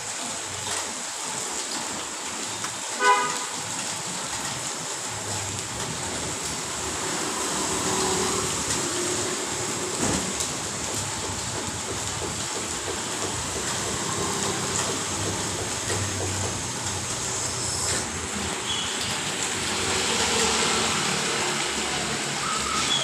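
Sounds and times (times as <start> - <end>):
steady rain: 0.0 - 23.0
street traffic: 2.5 - 23.0
vehicle horn toot: 3.0 - 3.5
vehicle passing: 6.8 - 9.5, 19.3 - 22.9.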